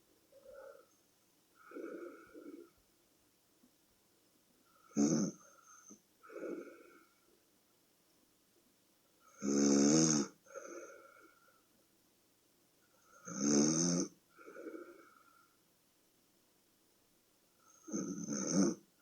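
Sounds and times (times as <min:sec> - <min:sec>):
soft breath: 0:00.0 - 0:02.8, 0:04.6 - 0:07.4, 0:10.4 - 0:11.8, 0:14.3 - 0:15.7
person snoring loudly: 0:04.9 - 0:05.5, 0:09.3 - 0:10.7, 0:13.2 - 0:15.0, 0:17.8 - 0:18.8.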